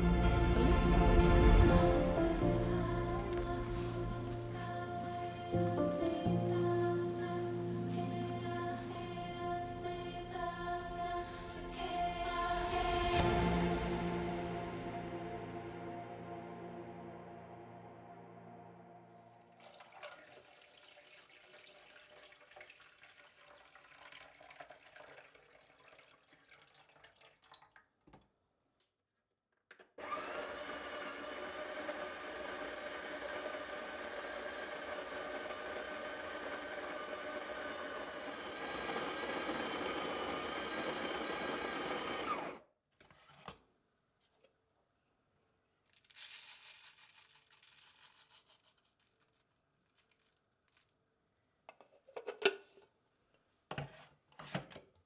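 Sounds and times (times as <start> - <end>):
small electric motor running: 30.0 - 42.6.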